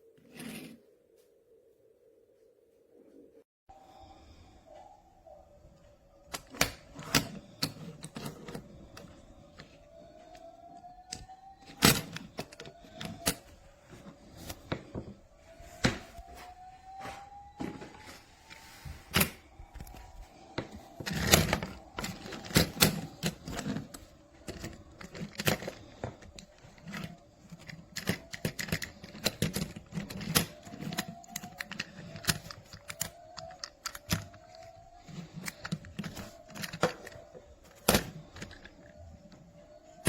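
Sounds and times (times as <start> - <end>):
toy vehicles clicking and clacking: 6.3 - 13.6, 21.0 - 39.4.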